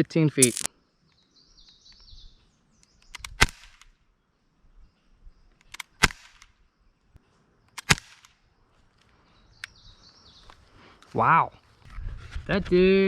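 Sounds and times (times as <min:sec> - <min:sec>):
birds chirping faintly: 0:00.2 - 0:11.8
airsoft pistol shots: 0:03.2 - 0:03.8, 0:05.8 - 0:06.4, 0:07.8 - 0:08.3.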